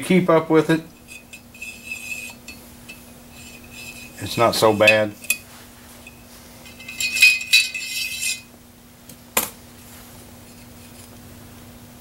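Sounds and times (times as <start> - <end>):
steady low hum: 0.0 - 12.0
metal cleaning tools clinking: 1.0 - 8.5.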